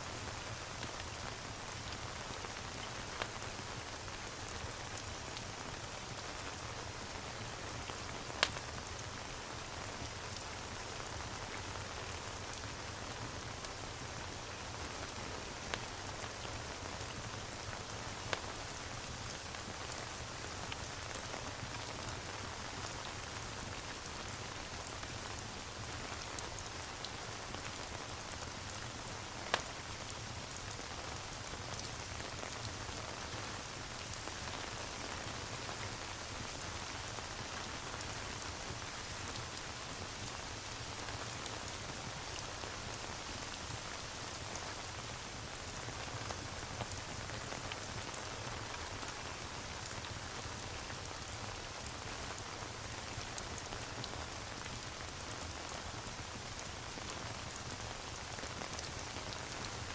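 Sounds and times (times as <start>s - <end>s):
steady rain falling: 0.0s - 59.9s
wood fire crackling: 7.8s - 9.0s, 28.0s - 30.5s.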